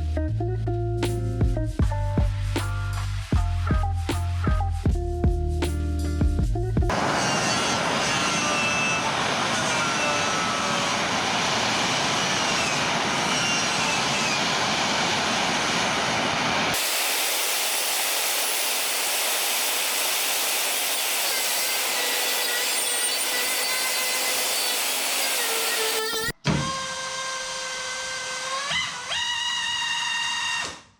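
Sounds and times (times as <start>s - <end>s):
power tool grinding sheet metal: 6.9s - 14.9s, 16.7s - 30.8s.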